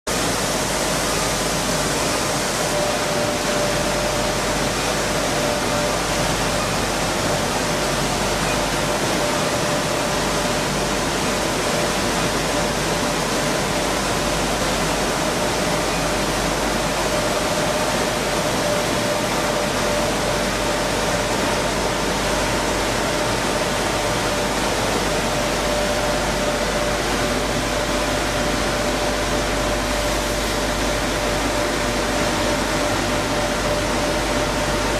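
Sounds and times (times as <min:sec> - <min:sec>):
faint machine whine: 0:00.1 - 0:34.9
grain mill rushing noise: 0:00.1 - 0:34.9
low machine hum: 0:00.1 - 0:34.9.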